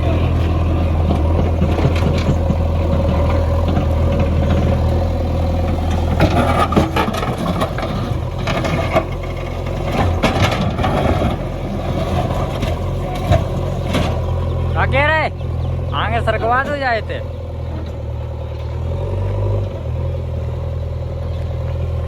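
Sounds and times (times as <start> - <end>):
diesel engine running: 0.0 - 22.0
metallic clanks and knocks: 1.1 - 4.9, 5.9 - 14.4.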